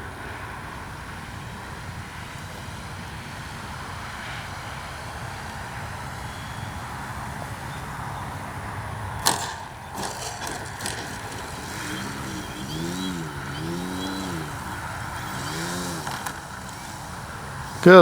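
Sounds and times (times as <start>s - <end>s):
model airplane motor buzzing: 0.0s - 18.0s
sharp click: 9.2s - 12.0s.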